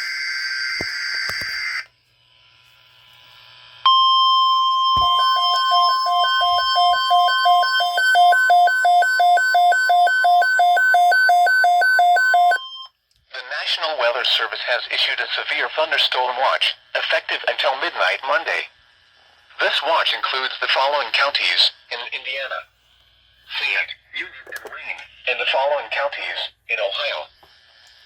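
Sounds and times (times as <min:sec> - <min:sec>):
rapidly pulsing beep: 0:03.9 - 0:12.9
steady warning alarm tone: 0:03.9 - 0:12.9.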